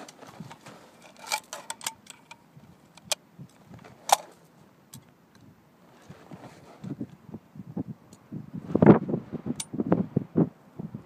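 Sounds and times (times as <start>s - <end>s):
rifles clicking and clattering: 0.0s - 3.2s, 4.0s - 4.4s.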